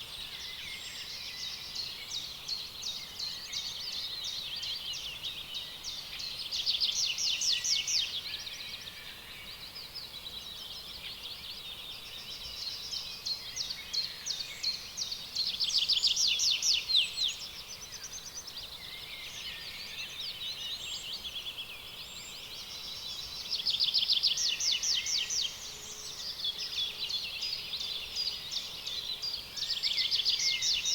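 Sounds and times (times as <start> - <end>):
songbirds chirping: 0.0 - 30.9.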